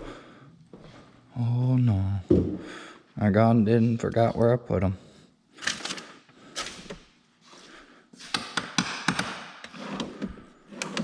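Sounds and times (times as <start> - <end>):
tools and parts clicking: 5.6 - 7.1.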